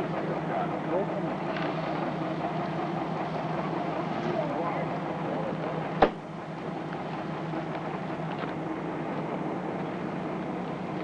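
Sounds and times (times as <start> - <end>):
steady rumbling: 0.0 - 11.0
sharp knock: 6.0 - 6.2.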